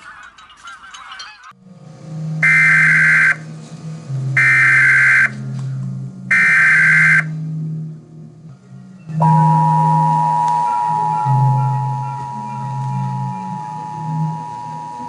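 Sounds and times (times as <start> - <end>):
low steady drone: 1.5 - 15.0
buzzy digital data tones: 2.4 - 3.4, 4.4 - 5.4, 6.3 - 7.3, 9.2 - 15.0
cartoon soundtrack: 6.3 - 7.4.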